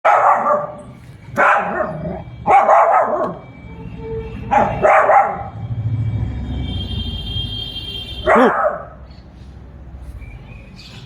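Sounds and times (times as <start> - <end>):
dog barking: 0.0 - 0.8, 1.4 - 3.4, 4.5 - 5.6, 8.2 - 9.0.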